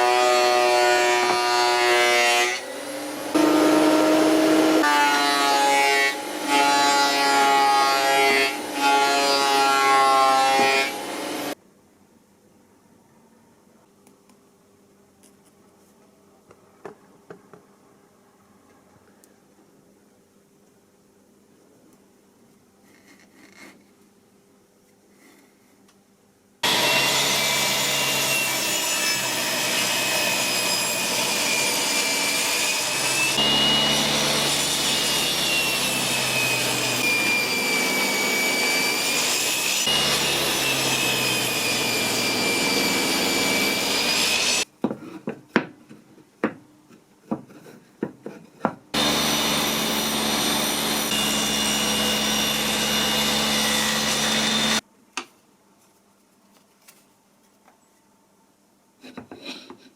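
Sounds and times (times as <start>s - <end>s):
power tool running on wood: 32.9s - 44.6s, 49.0s - 54.8s.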